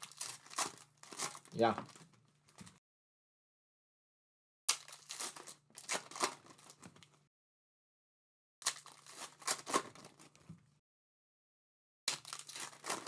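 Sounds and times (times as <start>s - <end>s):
wrappers tearing and crinkling: 0.0s - 2.1s, 4.7s - 6.8s, 8.6s - 10.1s, 12.1s - 13.0s.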